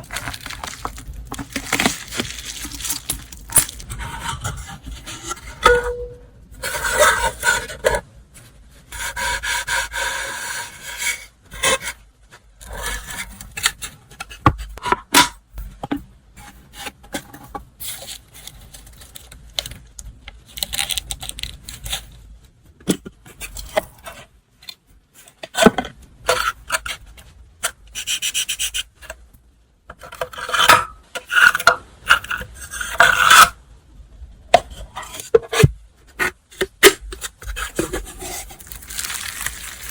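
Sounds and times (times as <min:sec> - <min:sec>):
paper and packaging rustling: 0:00.0 - 0:04.2, 0:17.8 - 0:19.9, 0:37.2 - 0:39.9.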